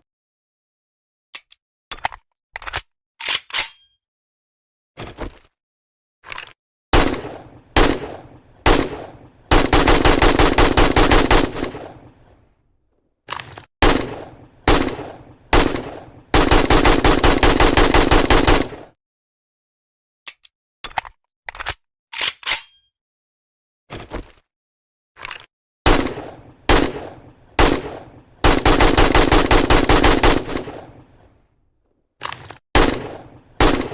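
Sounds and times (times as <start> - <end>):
automatic gunfire bursts: 7.0 - 12.1, 13.8 - 18.9, 25.9 - 31.0, 32.8 - 33.9
rifle single shots: 7.0 - 12.1, 13.8 - 18.9, 25.9 - 31.0, 32.8 - 33.9.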